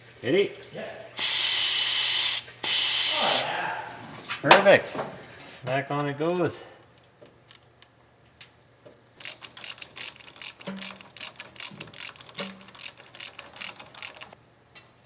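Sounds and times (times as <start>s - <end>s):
ratchet wrench clicking: 9.2s - 14.4s.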